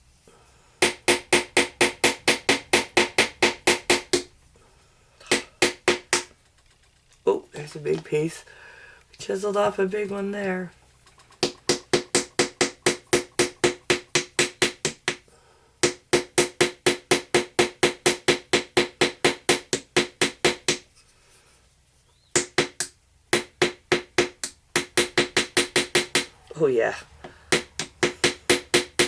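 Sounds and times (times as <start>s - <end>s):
hammer tapping chisel: 0.8s - 4.3s, 5.2s - 8.1s, 11.0s - 15.2s, 15.8s - 20.8s, 22.4s - 26.3s, 27.2s - 29.0s.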